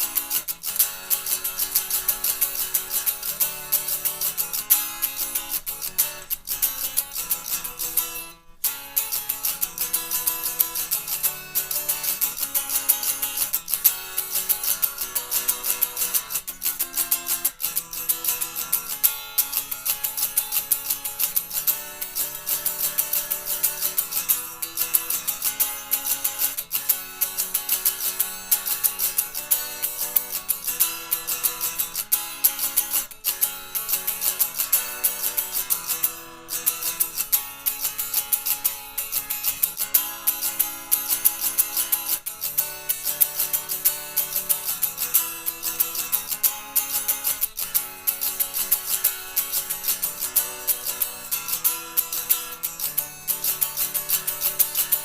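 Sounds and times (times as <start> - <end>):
guitar strumming chords: 0.0 - 55.0.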